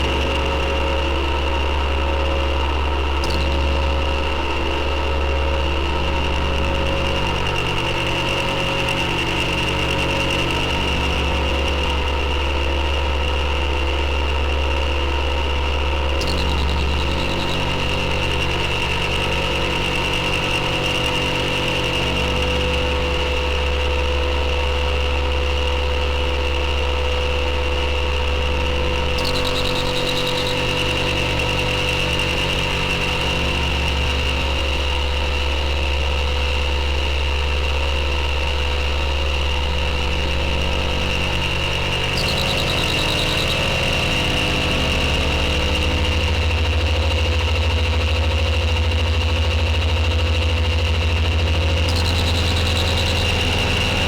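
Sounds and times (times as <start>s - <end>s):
synthesizer drone: 28.6s - 54.0s.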